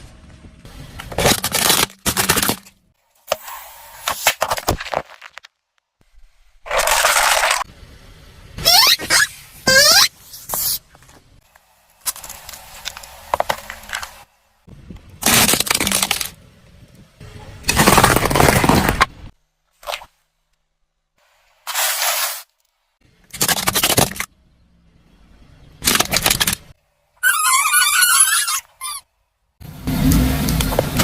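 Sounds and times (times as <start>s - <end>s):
toys crunching under car tyres: 6.6s - 7.7s, 15.2s - 16.4s, 17.6s - 20.1s.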